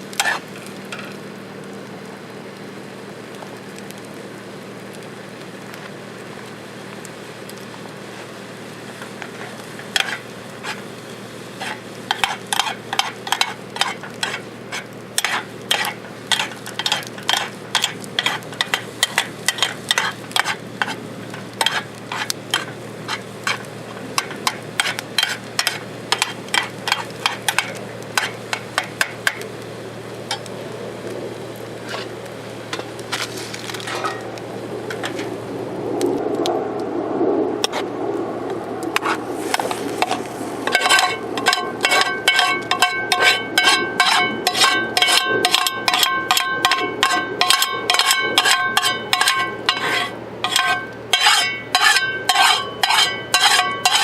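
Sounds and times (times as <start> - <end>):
food sizzling: 0.0 - 35.8, 38.9 - 54.0
utensil scraping a bowl: 11.6 - 21.0, 39.0 - 54.0.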